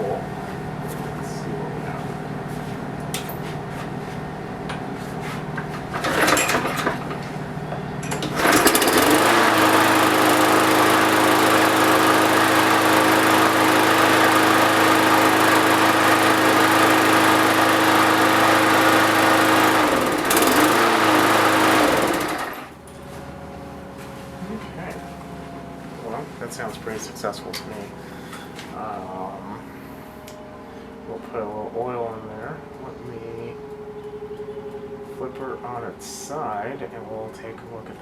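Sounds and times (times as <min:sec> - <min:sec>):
lawn mower engine running: 0:00.0 - 0:30.9
starter cord pull: 0:05.6 - 0:07.4, 0:08.0 - 0:22.7.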